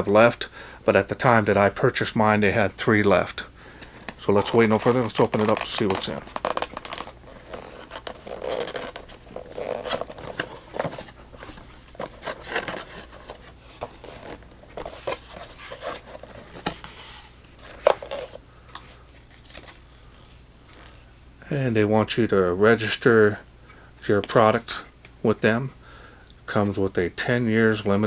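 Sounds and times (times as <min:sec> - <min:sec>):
cardboard box rustling: 0:04.1 - 0:19.8.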